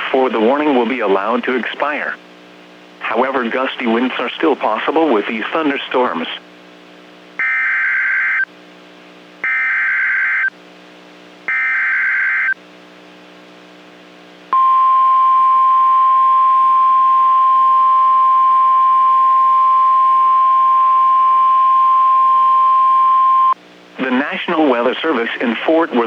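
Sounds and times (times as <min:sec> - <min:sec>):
steady warning alarm tone: 0:09.4 - 0:10.5, 0:11.5 - 0:12.6, 0:14.6 - 0:23.6.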